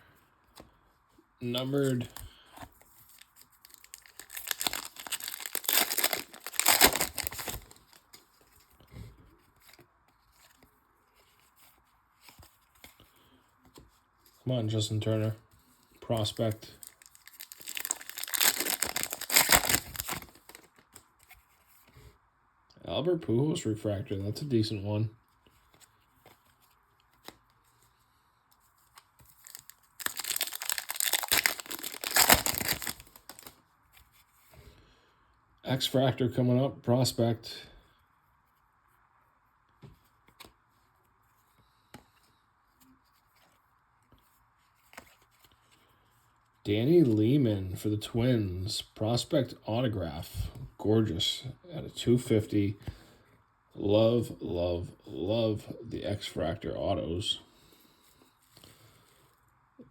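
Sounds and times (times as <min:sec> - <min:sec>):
foil pack tearing and crinkling: 0:03.2 - 0:08.0, 0:16.8 - 0:20.7, 0:29.4 - 0:33.6.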